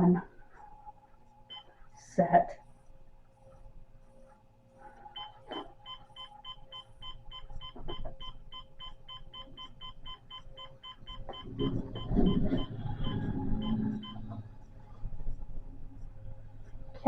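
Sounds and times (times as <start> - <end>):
digital clock beeping: 1.5 - 1.7, 5.1 - 14.4.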